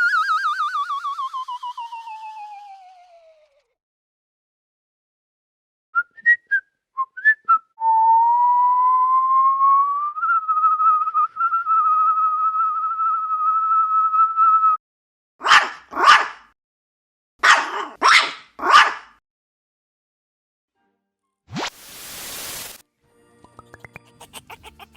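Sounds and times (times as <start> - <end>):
person whistling: 0.0 - 2.9, 6.0 - 14.8
dog barking: 15.4 - 16.5, 17.4 - 19.2.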